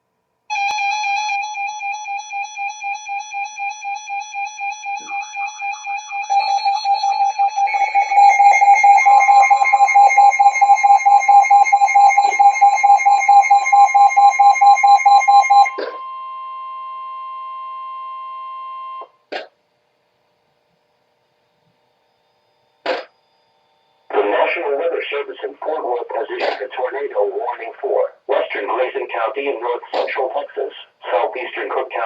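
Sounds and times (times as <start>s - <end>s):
electronic alert beeping: 4.8s - 16.0s
short pop: 22.8s - 23.2s, 26.4s - 26.6s, 29.9s - 30.1s.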